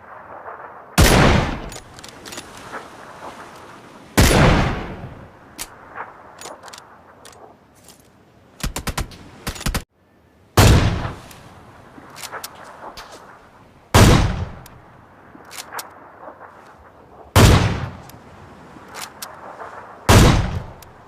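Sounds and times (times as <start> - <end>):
light clicks: 18.8 - 19.4.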